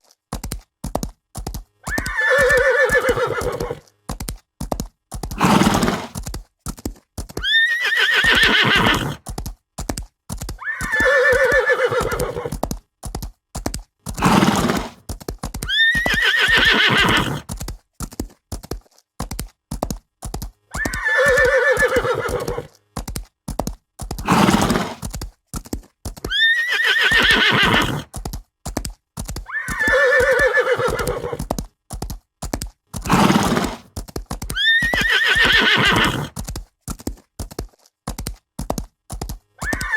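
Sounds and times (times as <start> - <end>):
hoofbeats: 0.0 - 39.9
horse neighing: 1.8 - 3.8, 5.4 - 6.2, 7.4 - 9.2, 10.6 - 12.6, 14.2 - 15.0, 15.6 - 17.5, 20.7 - 22.7, 24.2 - 25.0, 26.3 - 28.1, 29.5 - 31.5, 33.1 - 33.8, 34.5 - 36.3, 39.6 - 39.9
horse snorting: 5.3 - 6.2, 7.8 - 9.3, 10.7 - 12.6, 14.1 - 15.1, 15.7 - 17.5, 20.8 - 22.8, 24.2 - 25.1, 26.7 - 28.2, 29.5 - 31.5, 33.0 - 34.0, 34.6 - 36.4.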